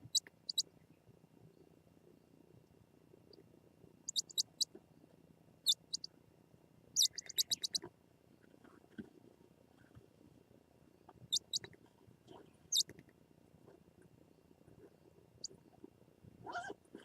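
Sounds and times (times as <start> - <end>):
owl nestlings squeaky chirps: 4.1 - 4.7, 5.7 - 6.1, 7.0 - 7.8, 11.3 - 11.7.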